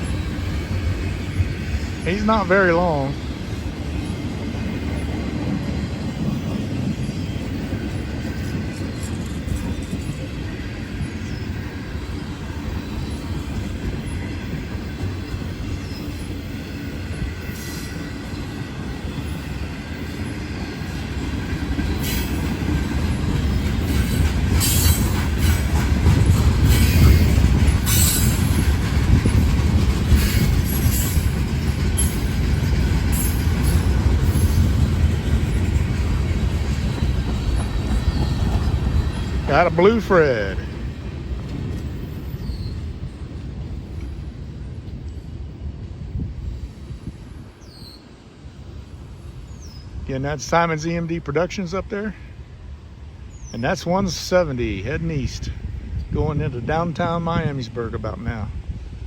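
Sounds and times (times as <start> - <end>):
train wheels rumbling on rail: 0.0 - 59.0
wheel squeals: 21.8 - 40.1, 41.6 - 43.2.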